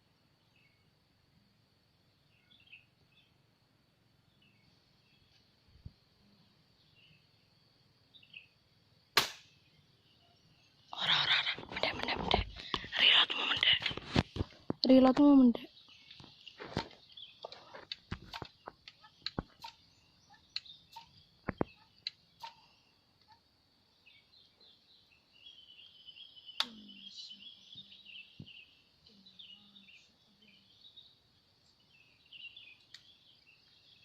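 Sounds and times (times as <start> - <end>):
birds chirping: 2.2 - 3.4, 6.3 - 8.6, 9.5 - 34.0
air rifle shot: 9.2 - 9.6.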